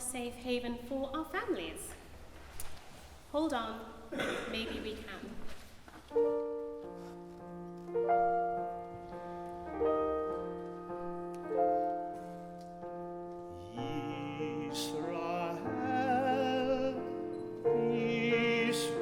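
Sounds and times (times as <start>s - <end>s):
piano chords: 6.1s - 19.0s
person singing: 13.5s - 19.0s.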